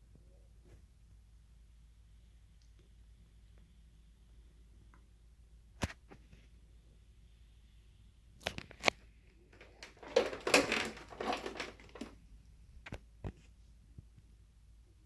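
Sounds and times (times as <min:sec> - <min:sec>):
rustling and crinkling: 0:08.4 - 0:13.6.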